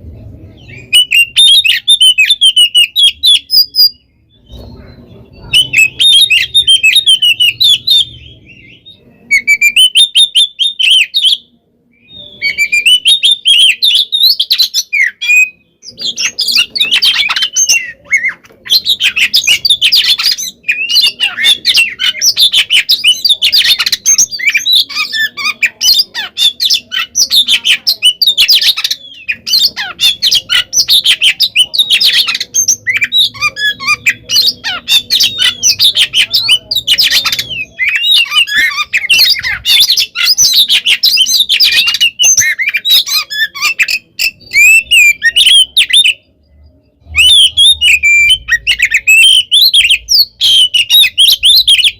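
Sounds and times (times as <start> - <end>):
bird singing chattering and whistling: 0.5 - 51.9.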